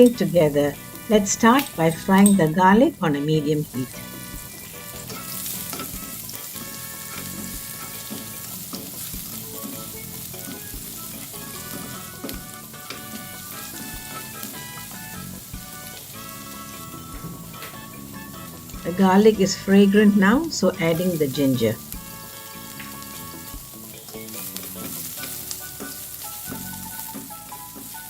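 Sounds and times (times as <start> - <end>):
garlic sizzling in oil: 0.0 - 28.0
soft background music: 0.0 - 28.0
spatula knocking pan: 3.7 - 18.9, 20.2 - 28.0.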